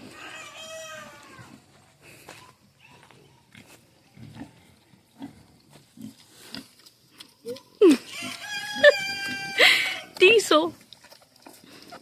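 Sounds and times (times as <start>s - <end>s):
rooster crowing: 0.0s - 1.5s, 8.1s - 10.1s
pigs grunting and chewing: 0.0s - 12.0s.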